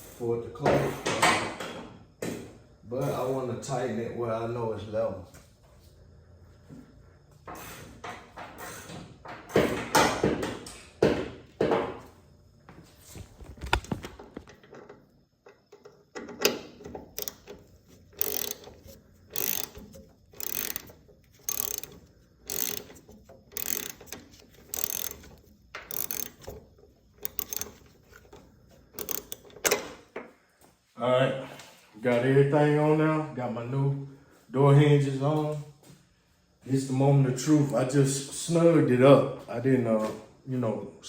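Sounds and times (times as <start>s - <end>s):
hand ratchet clicking: 15.7s - 30.0s.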